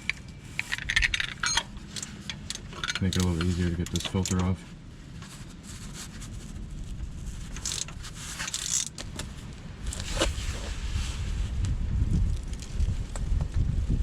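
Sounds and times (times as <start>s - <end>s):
metal wrench clinking and scraping: 0.0s - 4.5s, 7.6s - 8.9s
low rumbling noise: 0.0s - 14.0s.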